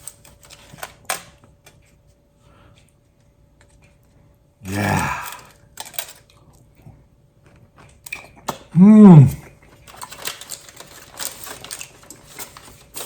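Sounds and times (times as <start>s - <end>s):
mouth-full murmur of approval: 8.8s - 9.4s.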